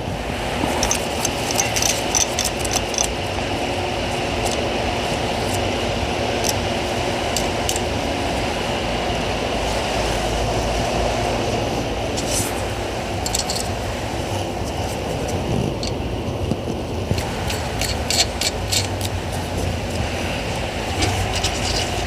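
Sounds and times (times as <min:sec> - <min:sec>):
low workshop hum: 0:00.0 - 0:22.0
sharp metallic clicks: 0:00.7 - 0:03.2, 0:13.2 - 0:13.8, 0:17.1 - 0:19.2.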